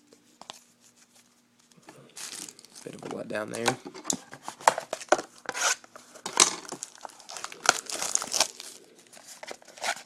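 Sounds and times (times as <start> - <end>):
wrapper and cards crinkling: 2.2 - 3.6, 4.5 - 10.0.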